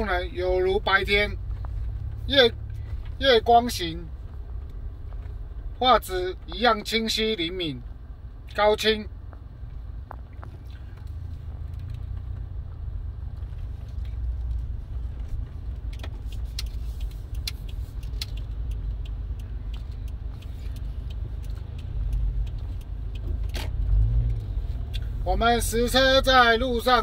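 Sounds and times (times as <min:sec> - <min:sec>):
car road and engine rumble: 0:00.0 - 0:27.0
sharp clicks: 0:15.7 - 0:25.2.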